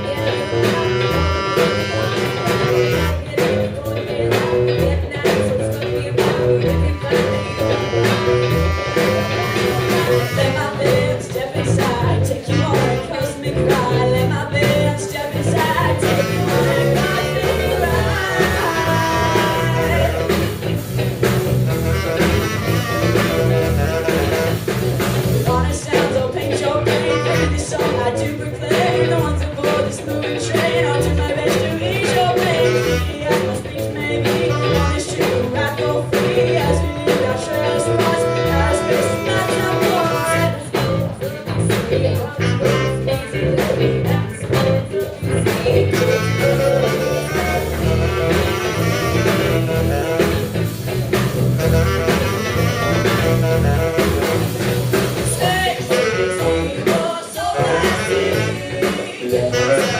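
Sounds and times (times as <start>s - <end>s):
tenor saxophone: 0.0s - 3.7s, 6.2s - 11.4s, 12.3s - 13.3s, 15.4s - 25.6s, 26.6s - 28.1s, 32.0s - 41.1s, 42.2s - 43.4s, 45.5s - 59.9s
funk-rock band playing: 0.0s - 59.9s
steady drum beat: 0.0s - 59.9s.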